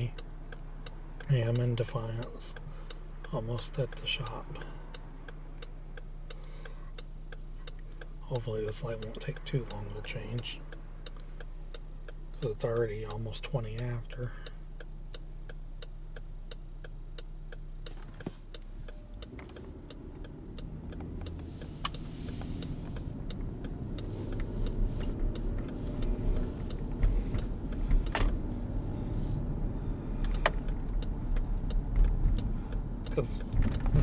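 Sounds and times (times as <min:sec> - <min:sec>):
car engine and road noise: 0:00.0 - 0:34.0
turn signal ticking: 0:00.0 - 0:34.0.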